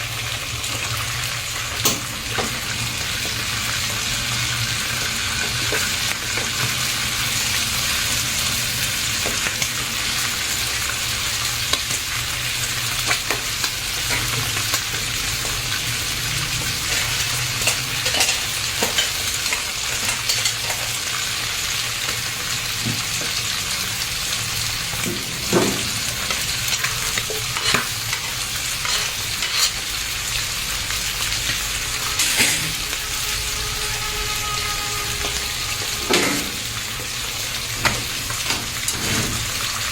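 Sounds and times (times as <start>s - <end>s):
meat sizzling in oil: 0.0s - 39.9s
utensil scraping and knocking pan: 25.0s - 29.8s.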